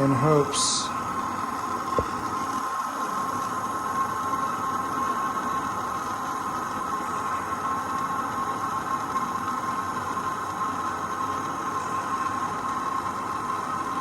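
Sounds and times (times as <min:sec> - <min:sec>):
propane torch flame hissing: 0:00.0 - 0:14.0.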